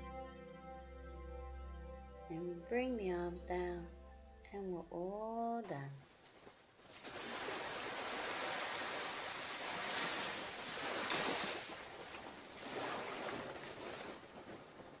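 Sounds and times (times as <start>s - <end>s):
surf breaking on beach: 6.9s - 15.0s.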